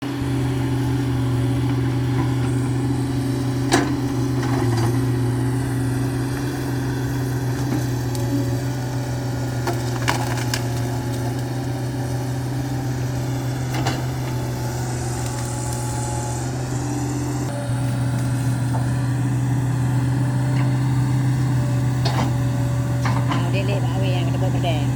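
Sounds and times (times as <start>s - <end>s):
excavator diesel engine running: 0.0s - 24.9s
wood cracking and splintering: 9.5s - 12.2s.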